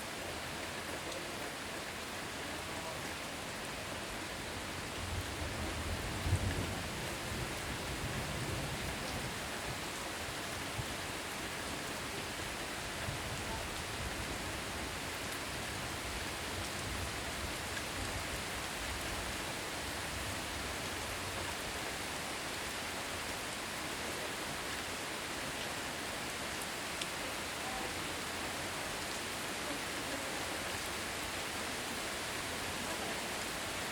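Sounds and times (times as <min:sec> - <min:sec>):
heavy rain: 0:00.0 - 0:33.9.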